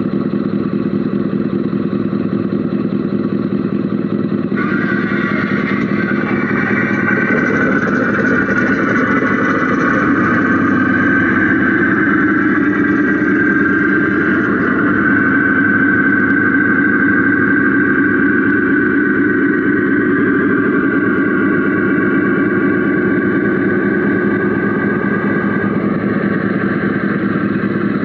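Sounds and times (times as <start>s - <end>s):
high motor whine: 0.0s - 28.0s
toy truck motor drone: 4.6s - 17.9s.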